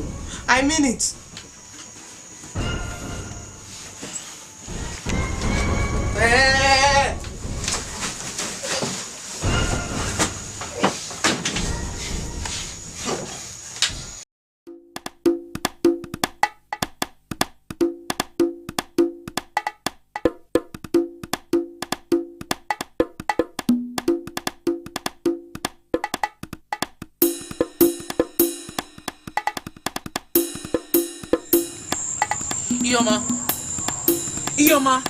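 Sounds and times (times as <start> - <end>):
hissy percussion: 0.0 - 6.3, 7.2 - 14.2, 27.2 - 35.0
percussive background music: 4.7 - 6.4, 14.7 - 35.0.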